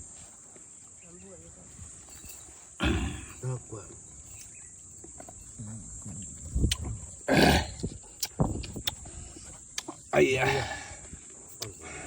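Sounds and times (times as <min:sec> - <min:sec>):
baboon grunt: 0:02.8 - 0:03.4, 0:07.2 - 0:08.0
sharp clicks: 0:08.2 - 0:09.0.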